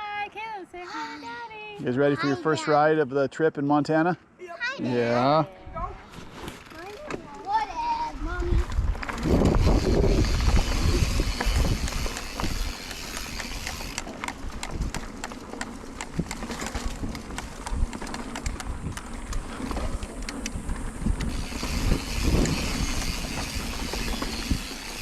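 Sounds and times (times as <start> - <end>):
bike tyre noise on dirt: 6.0 - 25.0
wind rumble on microphone: 8.2 - 15.1, 16.0 - 25.0.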